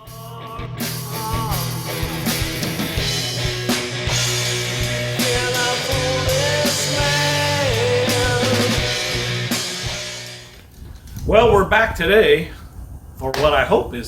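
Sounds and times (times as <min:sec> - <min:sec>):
bending lead guitar melody: 0:00.0 - 0:10.5
rock music: 0:00.0 - 0:10.6.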